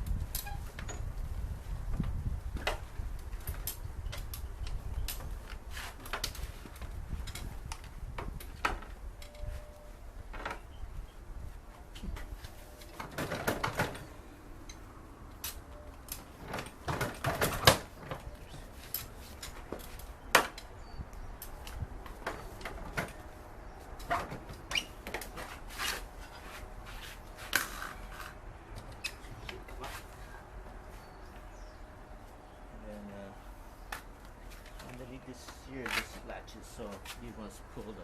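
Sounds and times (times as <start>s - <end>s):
scraping and rustling: 21.6s - 31.2s.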